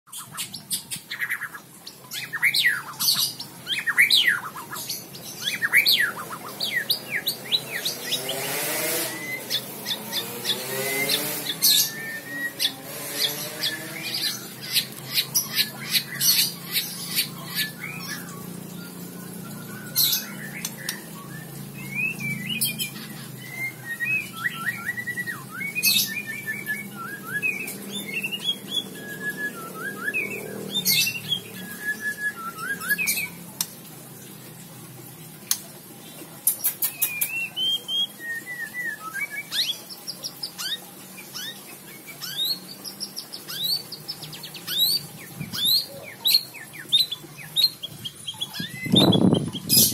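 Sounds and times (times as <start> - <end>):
bird singing whistles and clicks: 17.6 - 33.8, 36.4 - 42.6, 43.3 - 49.9.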